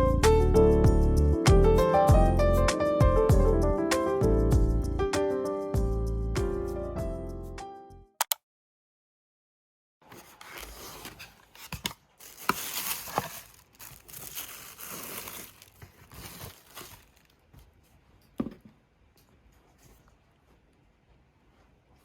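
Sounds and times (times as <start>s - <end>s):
crinkling and rustling: 10.0s - 22.0s.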